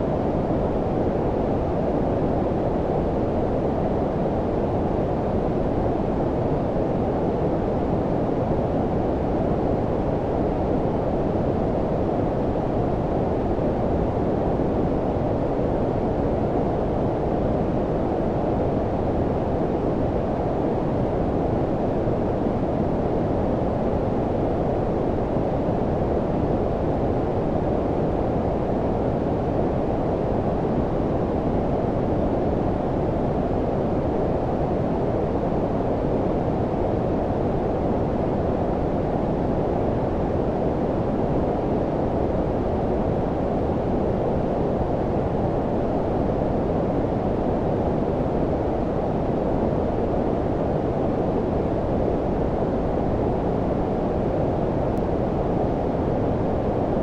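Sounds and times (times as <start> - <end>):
low muffled brown noise: 0.0 - 57.0.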